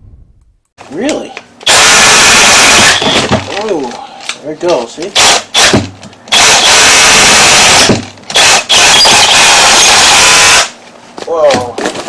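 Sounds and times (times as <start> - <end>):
rotary hammer drilling: 1.6 - 3.3, 5.2 - 10.7.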